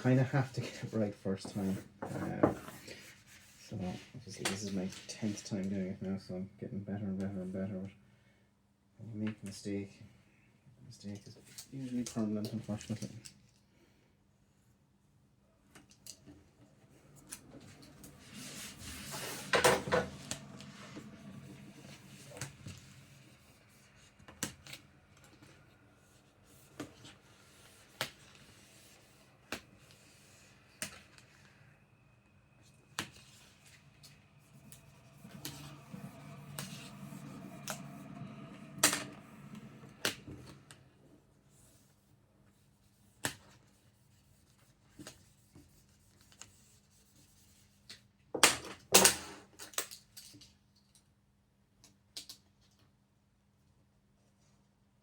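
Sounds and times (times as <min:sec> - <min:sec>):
squeegee scraping vinyl film: 0:17.2 - 0:31.5.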